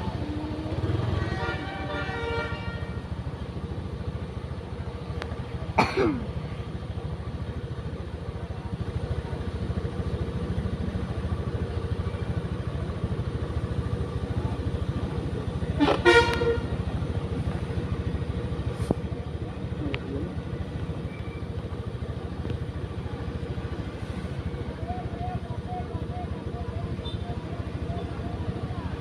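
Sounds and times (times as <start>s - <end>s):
low engine rumble: 0.0s - 29.0s
bus horn blast: 0.8s - 3.1s, 15.7s - 16.8s.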